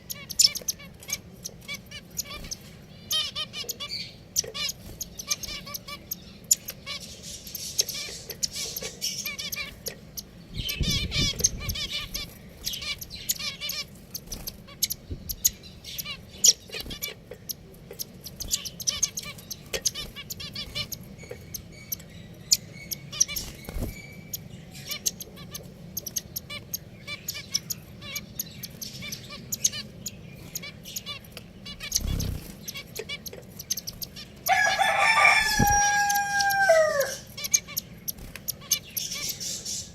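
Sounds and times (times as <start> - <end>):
finches chirping and twittering: 0.0 - 39.9
rooster crowing: 34.5 - 37.3.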